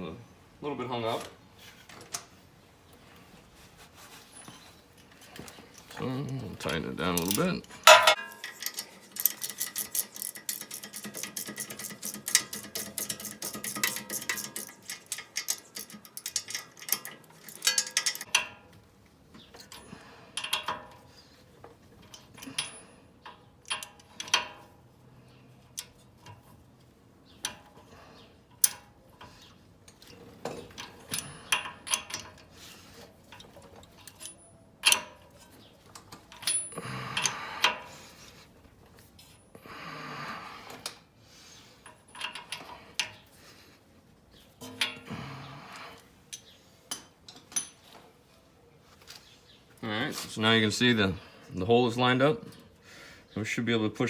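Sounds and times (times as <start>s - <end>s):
metal tools clinking and knocking: 4.3s - 24.8s, 25.7s - 38.2s, 41.8s - 43.2s, 44.6s - 45.1s, 46.3s - 48.1s
hand ratchet clicking: 7.2s - 18.4s.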